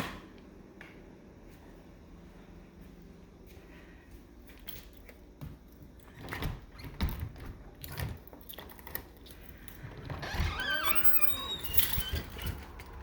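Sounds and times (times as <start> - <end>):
soft footsteps: 0.8 - 5.7.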